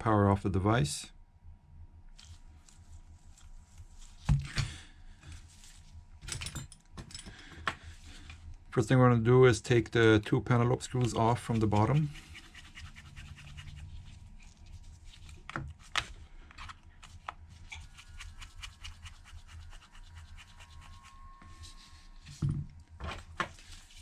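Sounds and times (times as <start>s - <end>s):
low steady hum: 0.0s - 24.0s.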